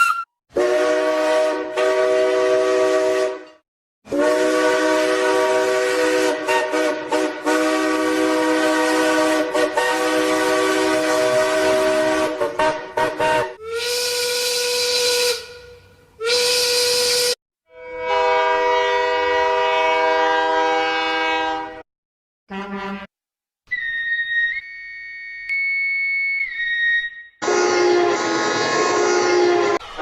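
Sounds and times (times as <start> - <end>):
cartoon train whistle chord: 0.0 - 21.8, 23.8 - 30.0
steam whistle blasts: 0.0 - 21.8, 25.5 - 30.0.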